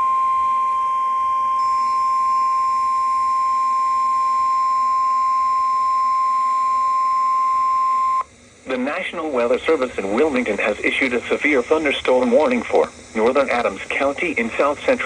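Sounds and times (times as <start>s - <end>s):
steady alarm tone: 0.0s - 8.2s
faint radio hiss: 0.0s - 15.0s.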